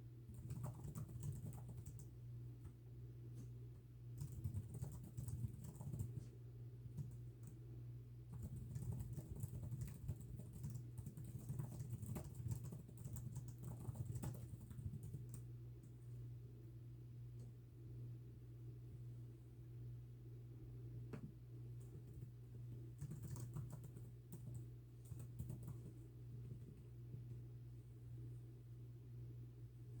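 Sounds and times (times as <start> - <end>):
steady low hum: 0.0 - 30.0
computer keyboard key clicks: 8.4 - 15.4, 23.0 - 25.8.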